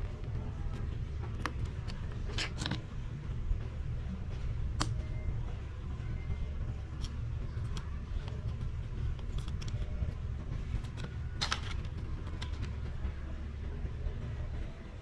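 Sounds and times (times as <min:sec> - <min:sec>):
steady low hum: 0:00.0 - 0:15.0
clicks of small parts and tools: 0:01.4 - 0:02.8.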